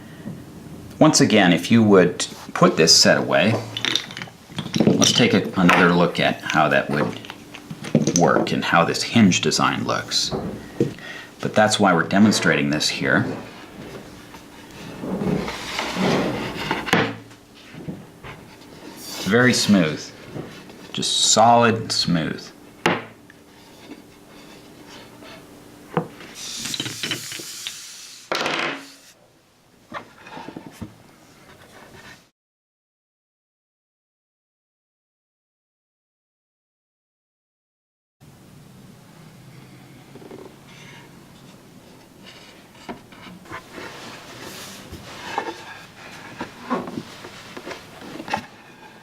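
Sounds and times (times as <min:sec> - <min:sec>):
wood rubbing and sliding: 0:02.4 - 0:21.5, 0:22.9 - 0:28.0, 0:29.9 - 0:32.2, 0:40.1 - 0:49.0.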